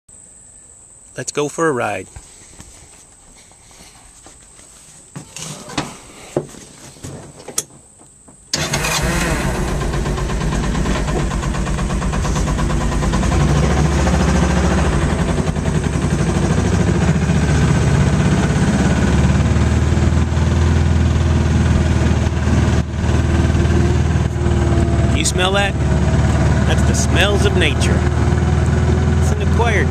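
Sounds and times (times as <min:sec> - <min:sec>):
vehicle engine running: 0:08.6 - 0:29.9.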